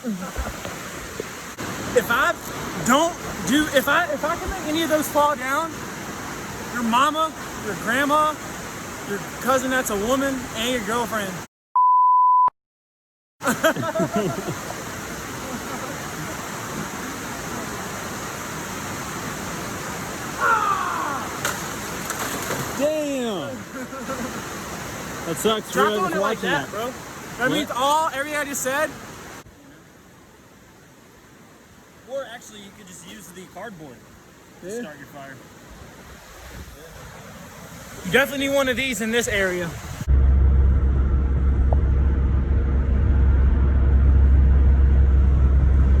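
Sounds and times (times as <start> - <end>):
waterfall rushing: 0.0 - 11.4, 13.4 - 40.1
person calling out loudly: 20.4 - 21.4
car engine and road noise: 40.1 - 46.0.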